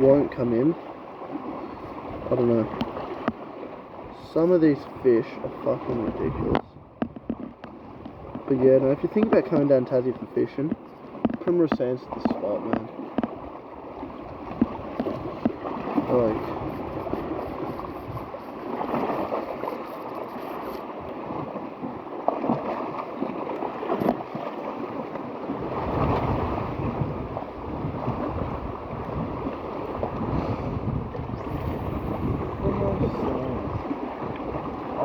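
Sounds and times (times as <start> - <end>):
sea waves on shore: 0.0 - 35.0
wind buffeting microphone: 5.9 - 9.3, 13.3 - 22.1, 25.5 - 35.0.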